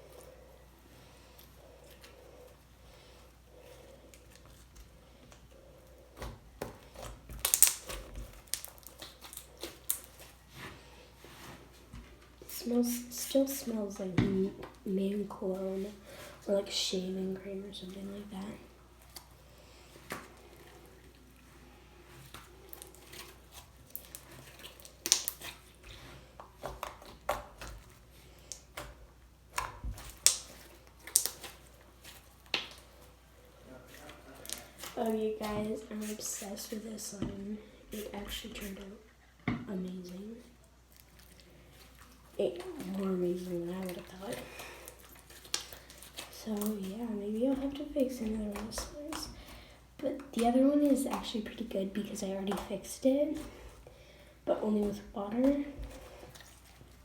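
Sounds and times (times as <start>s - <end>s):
slime clicking and crackling: 4.1s - 10.4s, 22.2s - 33.1s, 33.9s - 36.0s, 40.8s - 53.9s.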